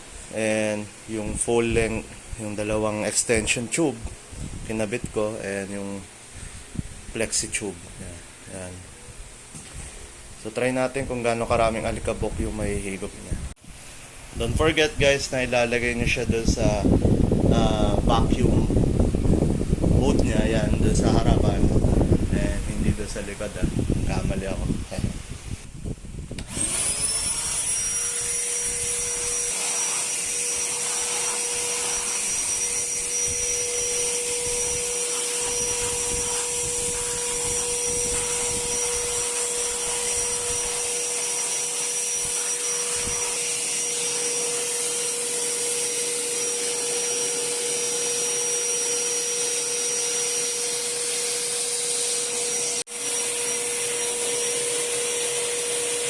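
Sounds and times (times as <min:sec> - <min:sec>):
vacuum cleaner motor whining: 0:26.3 - 0:56.0
vacuum nozzle on carpet: 0:26.3 - 0:56.0.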